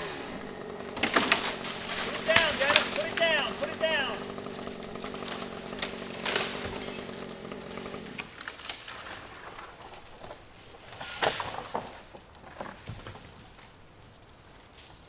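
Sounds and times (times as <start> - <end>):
engine idling: 0.0 - 8.4.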